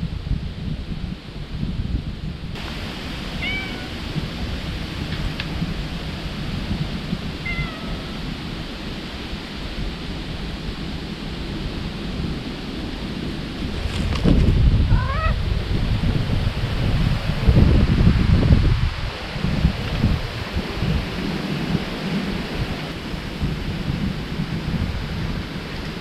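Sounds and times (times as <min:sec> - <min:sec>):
wind buffeting microphone: 0:00.0 - 0:26.0
cat meowing: 0:03.4 - 0:04.0, 0:07.4 - 0:08.2, 0:14.9 - 0:15.4.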